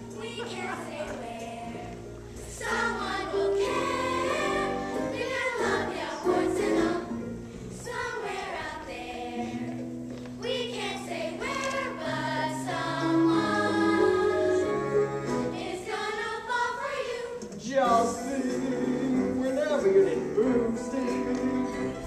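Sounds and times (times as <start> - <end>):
musical accompaniment: 0.0 - 22.0
children singing in unison: 0.1 - 7.2, 7.8 - 9.7, 10.4 - 17.5.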